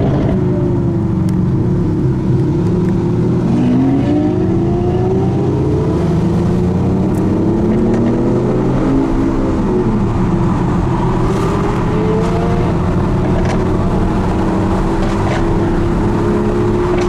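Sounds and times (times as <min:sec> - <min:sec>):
road and wind noise: 0:00.0 - 0:17.0
sports car engines accelerating: 0:00.0 - 0:17.0.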